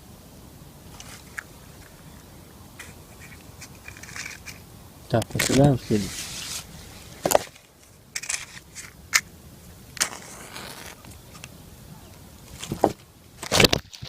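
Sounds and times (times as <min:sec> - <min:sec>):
sharp clicks and scrapes: 0:02.8 - 0:04.6, 0:07.2 - 0:09.3, 0:10.0 - 0:11.5.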